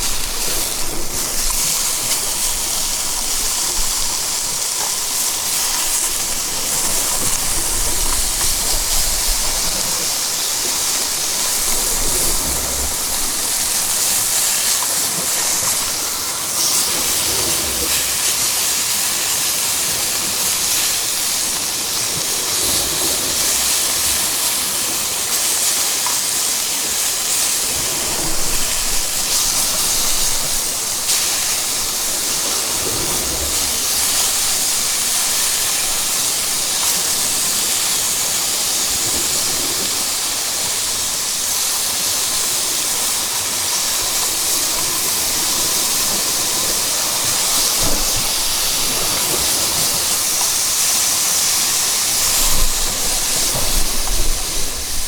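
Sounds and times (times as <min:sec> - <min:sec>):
low rumbles of gusts: 0:00.0 - 0:14.6
wind hissing on microphone: 0:00.0 - 0:55.0.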